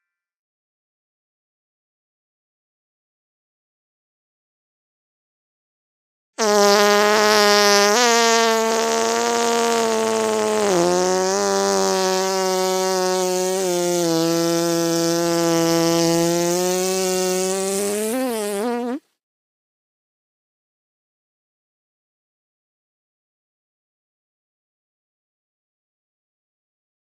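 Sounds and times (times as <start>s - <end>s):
low reedy buzzing: 6.4s - 19.0s.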